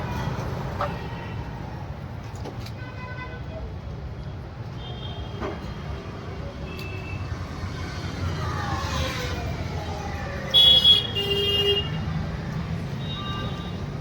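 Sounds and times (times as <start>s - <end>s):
road traffic rumbling: 0.0s - 2.8s, 3.5s - 14.0s
passing vehicle: 5.4s - 14.0s
vehicle horn honking: 10.6s - 12.0s.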